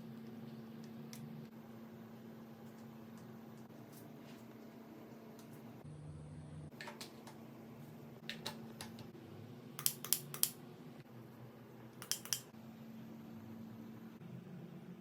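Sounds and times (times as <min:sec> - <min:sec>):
sharp clicks: 0:09.8 - 0:10.6, 0:12.0 - 0:12.5.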